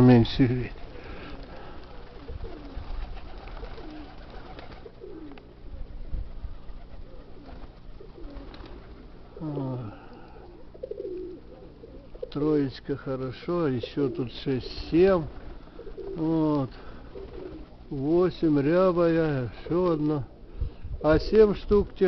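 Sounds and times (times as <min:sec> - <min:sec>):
pigeons cooing: 0:00.5 - 0:21.9
low wind rumble: 0:04.8 - 0:08.3, 0:20.2 - 0:22.0.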